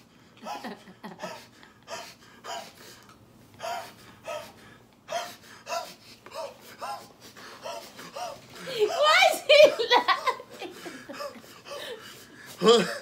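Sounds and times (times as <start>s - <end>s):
man laughing hard: 0.4s - 1.7s, 8.7s - 12.0s, 12.6s - 13.0s.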